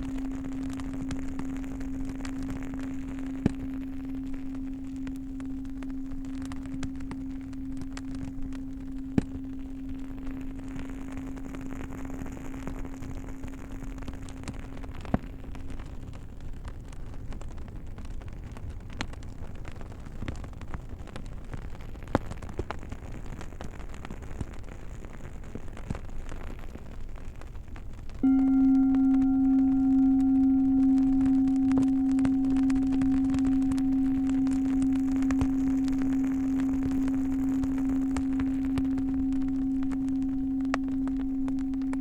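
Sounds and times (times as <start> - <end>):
singing bowl humming: 0.0 - 16.0, 28.2 - 42.0.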